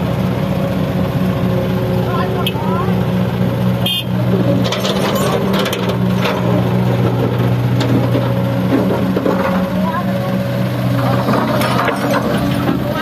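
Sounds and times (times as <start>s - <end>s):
diesel engine of heavy machinery: 0.0s - 13.0s
sharp metal clanks and knocks: 4.5s - 9.8s, 11.0s - 12.9s.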